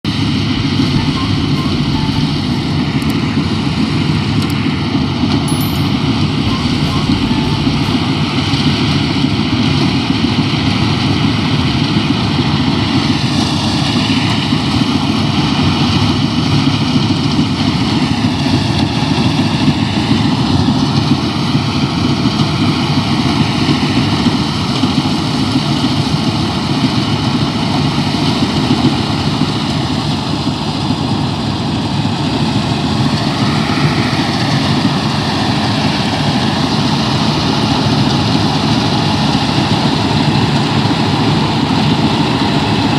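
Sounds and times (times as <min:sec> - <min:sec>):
heavy engine running: 0:00.0 - 0:42.9.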